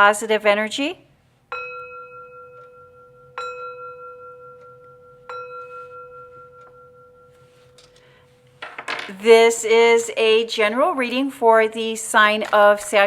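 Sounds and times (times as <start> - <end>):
meditation chime ringing: 1.5 - 8.6.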